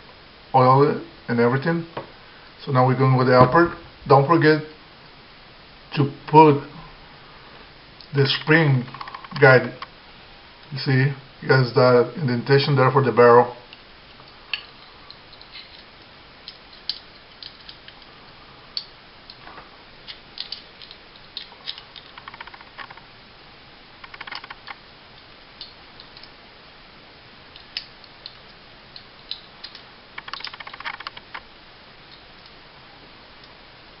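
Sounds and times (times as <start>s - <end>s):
rapid clicking: 20.4s - 23.0s, 24.0s - 24.8s, 29.0s - 31.4s.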